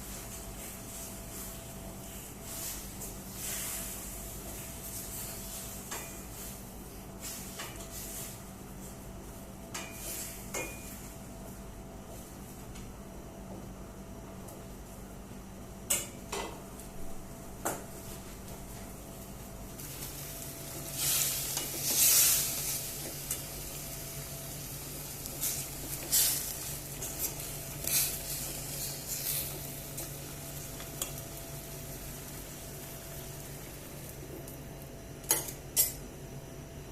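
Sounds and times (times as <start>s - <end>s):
food sizzling in a pan: 0.0s - 9.0s, 9.8s - 11.1s, 19.7s - 36.0s
spatula stirring and scraping: 20.0s - 23.7s, 25.1s - 31.9s.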